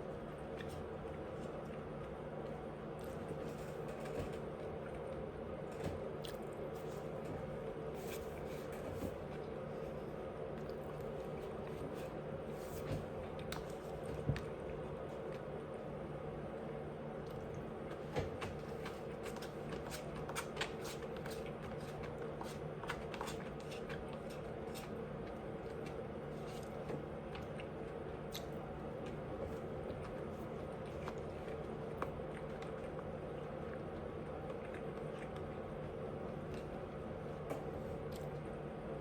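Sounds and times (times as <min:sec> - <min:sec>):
wet chewing clicks and crunches: 0:00.0 - 0:07.3, 0:10.4 - 0:12.2, 0:13.2 - 0:15.7, 0:17.2 - 0:37.0
steady low hum: 0:00.0 - 0:39.0.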